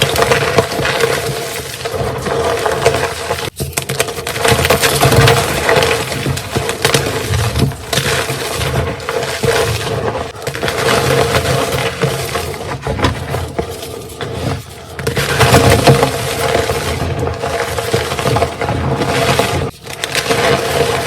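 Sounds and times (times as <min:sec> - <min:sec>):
chalk crunching and crackling: 0:00.0 - 0:21.0.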